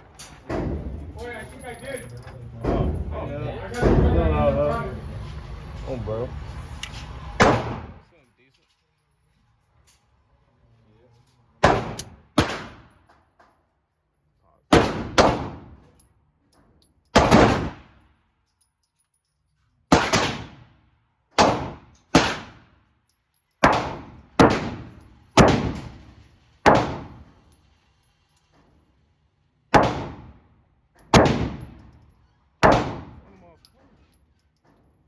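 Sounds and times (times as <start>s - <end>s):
pistol shots: 7.4s - 7.9s, 11.6s - 12.9s, 14.7s - 15.8s, 17.2s - 17.9s, 19.9s - 20.6s, 21.4s - 22.6s, 23.6s - 27.3s, 29.7s - 30.4s, 31.1s - 31.8s, 32.6s - 33.3s.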